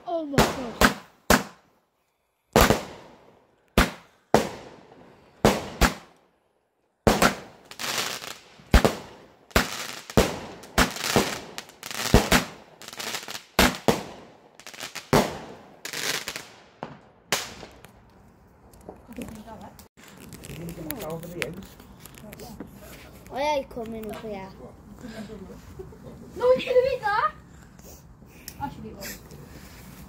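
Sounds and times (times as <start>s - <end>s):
fireworks exploding: 0.2s - 1.6s, 2.6s - 6.1s, 7.0s - 18.0s.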